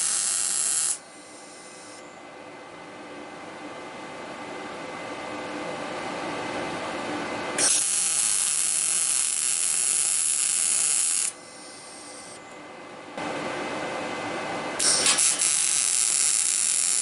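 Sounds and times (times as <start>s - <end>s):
welding arc crackling and hissing: 0.0s - 2.0s, 7.6s - 12.4s, 14.8s - 17.0s
welder low hum: 0.0s - 2.2s, 7.0s - 17.0s.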